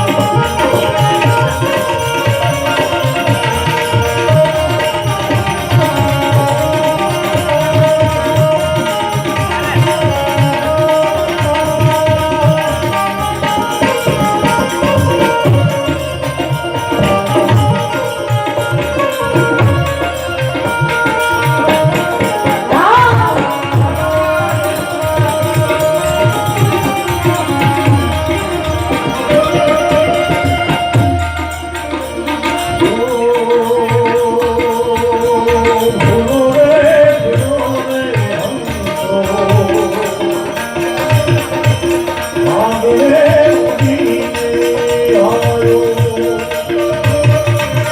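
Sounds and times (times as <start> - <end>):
wavering melody line: 0.0 - 42.8
hand drums beat: 0.0 - 47.9.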